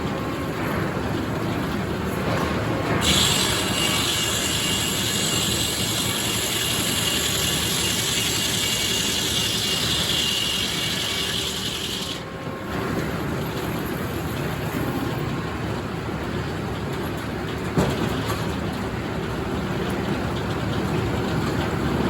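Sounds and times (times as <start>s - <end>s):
circular saw cutting wood: 3.0s - 12.2s
mill motor running: 3.0s - 12.4s.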